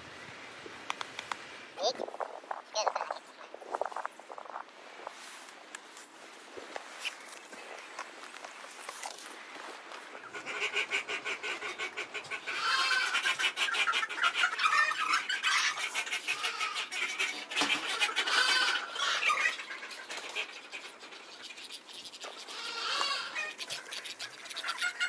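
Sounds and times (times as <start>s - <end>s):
farmyard fowl calling: 10.2s - 21.4s, 22.3s - 25.0s.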